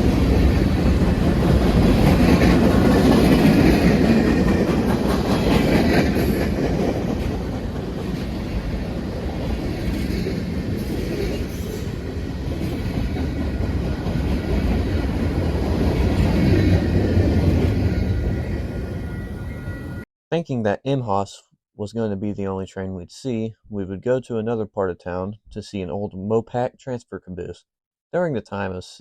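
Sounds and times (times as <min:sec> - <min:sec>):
wheels clicking over rail joints: 0:00.0 - 0:18.4
freight train rumbling past: 0:00.0 - 0:20.0.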